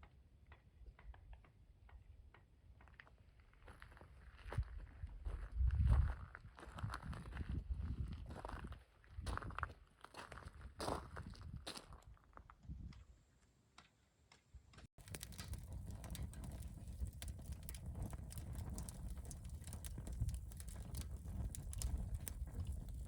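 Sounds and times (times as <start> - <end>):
campfire crackling: 15.0 - 23.0.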